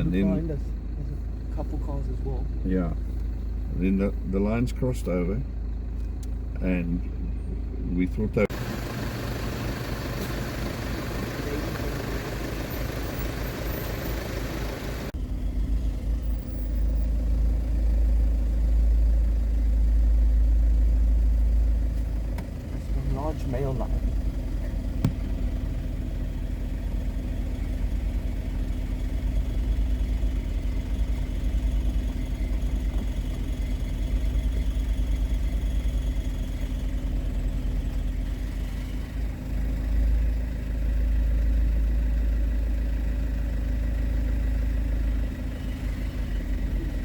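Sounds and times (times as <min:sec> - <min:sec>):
car engine idling: 0:00.0 - 0:47.0.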